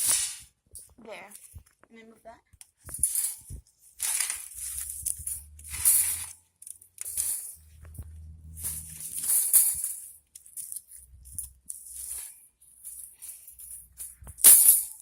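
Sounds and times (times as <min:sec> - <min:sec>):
material rustling: 0:02.8 - 0:15.0
low rumble: 0:07.4 - 0:09.4.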